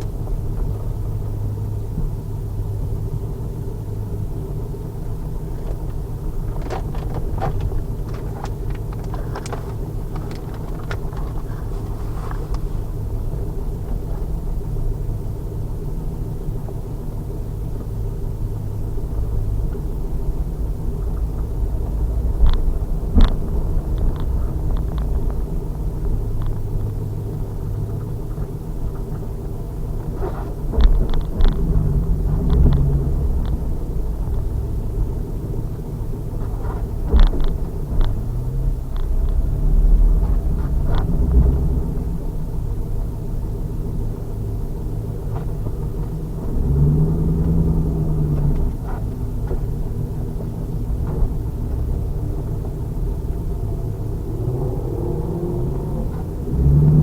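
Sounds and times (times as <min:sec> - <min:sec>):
car engine idling: 0:00.0 - 0:57.0
clicks and rattles: 0:05.6 - 0:12.7.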